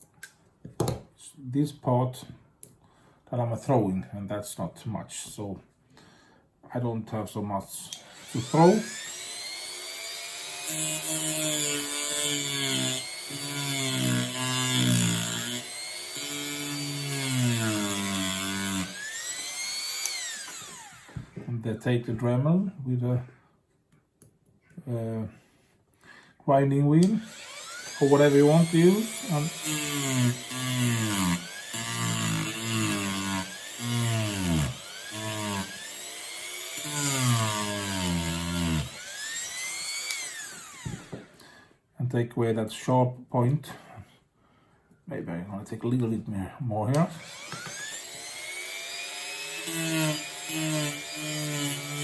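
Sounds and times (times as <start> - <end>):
rotary tool grinding metal: 7.9 - 21.3, 27.0 - 41.4, 46.9 - 52.0.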